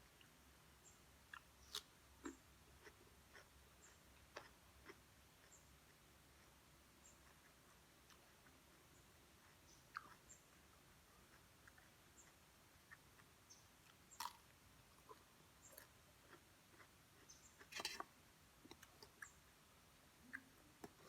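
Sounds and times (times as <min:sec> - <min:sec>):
chewing and mouth clicks: 0:01.3 - 0:08.8, 0:09.4 - 0:10.4, 0:11.2 - 0:19.4, 0:20.2 - 0:21.0
crunchy bite: 0:14.1 - 0:16.9.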